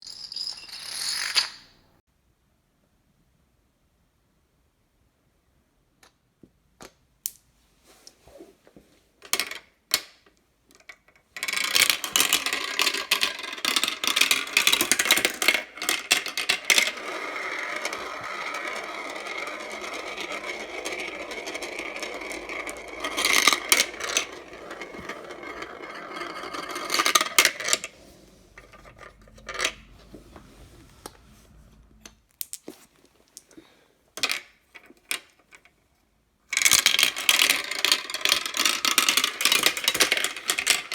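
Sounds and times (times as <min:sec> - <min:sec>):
marbles rattling through marble run: 0:11.4 - 0:27.9, 0:28.5 - 0:30.2, 0:36.6 - 0:40.9.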